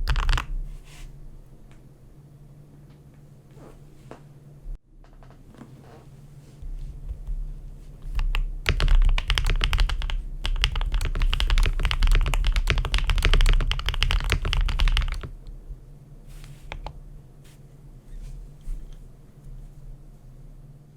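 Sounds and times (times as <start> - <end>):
mechanical keyboard typing: 0.0 - 0.5, 8.1 - 15.4.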